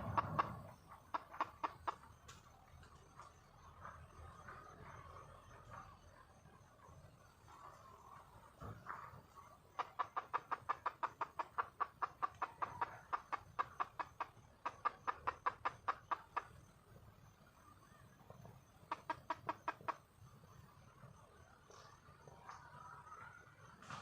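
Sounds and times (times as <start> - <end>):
hen clucking rapidly: 0.0 - 2.2, 9.4 - 16.8, 17.6 - 20.1.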